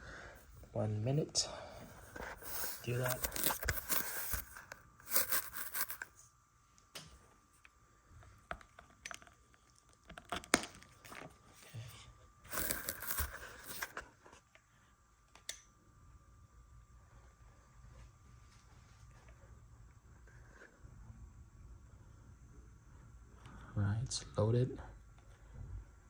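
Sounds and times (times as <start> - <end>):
handling noise rustling: 1.8 - 6.1, 12.5 - 14.0.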